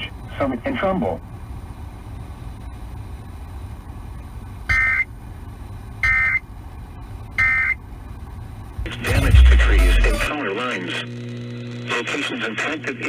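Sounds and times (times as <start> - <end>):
buzzy digital data bursts: 8.8 - 12.2.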